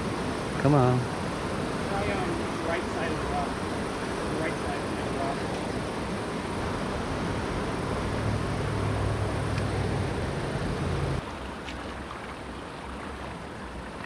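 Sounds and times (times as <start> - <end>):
wind rumbling on microphone: 0.0 - 11.2
river water rushing: 0.0 - 14.0.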